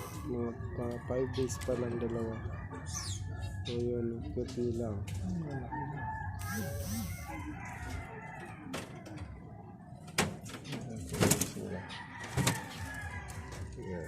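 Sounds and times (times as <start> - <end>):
rooster crowing: 5.4 - 9.0, 11.6 - 14.0.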